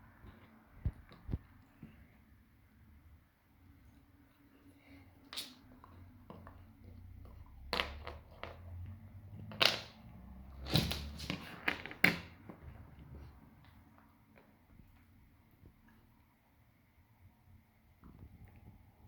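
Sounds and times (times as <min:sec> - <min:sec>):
puppy crunching an ice cube: 0:07.3 - 0:12.7.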